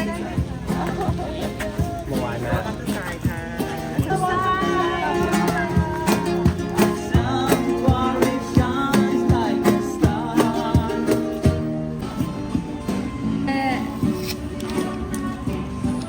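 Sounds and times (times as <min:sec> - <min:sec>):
steady beat: 0:00.0 - 0:12.4
plucked acoustic guitar: 0:00.0 - 0:16.0.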